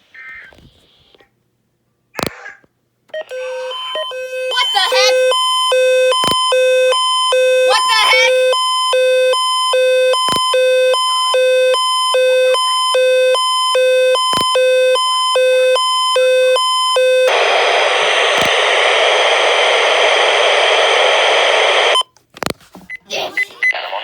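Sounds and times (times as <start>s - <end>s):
two-tone electronic alarm: 3.2s - 17.3s
loud static hiss: 14.7s - 22.0s.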